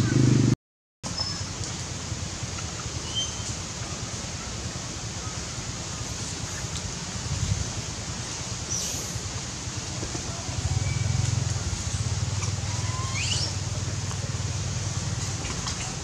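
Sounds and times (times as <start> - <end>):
low rumble: 0.0 - 0.6.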